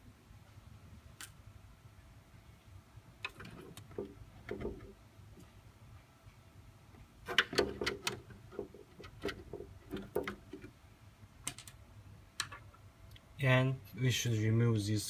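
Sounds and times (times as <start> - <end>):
small parts and tools clicking: 3.2 - 5.0, 7.2 - 10.8, 11.4 - 11.8, 12.4 - 13.2.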